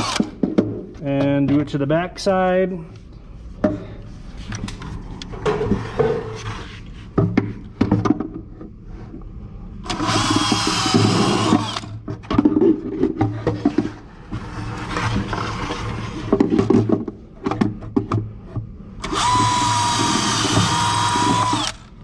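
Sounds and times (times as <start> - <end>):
power drill boring into wood: 0.0 - 0.4, 9.9 - 11.9, 14.4 - 16.2, 19.0 - 21.9.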